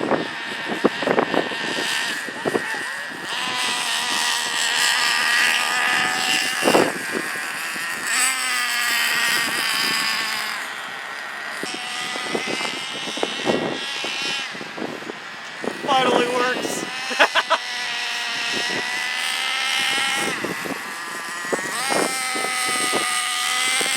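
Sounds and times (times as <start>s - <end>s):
nitro engine whining: 0.0s - 23.9s.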